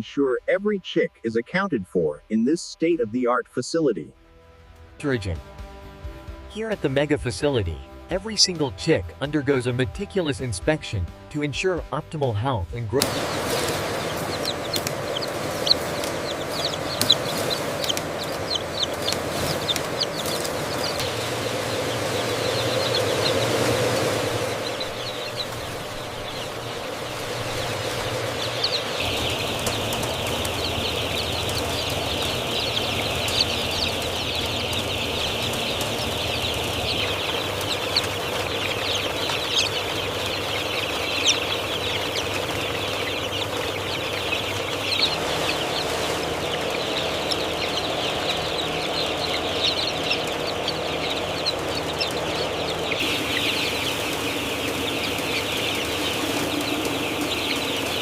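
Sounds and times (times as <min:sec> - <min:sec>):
chicks peeping: 0:06.5 - 0:58.0
steady low hum: 0:12.7 - 0:58.0.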